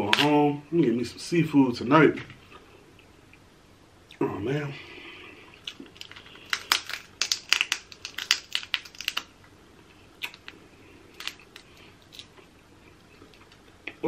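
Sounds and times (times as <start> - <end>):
crab shells cracking while eating: 5.5 - 9.5, 10.2 - 14.0.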